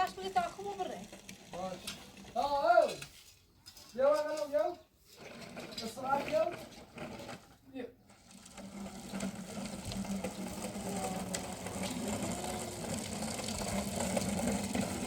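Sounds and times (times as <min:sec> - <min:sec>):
small motor humming: 0:08.2 - 0:15.0.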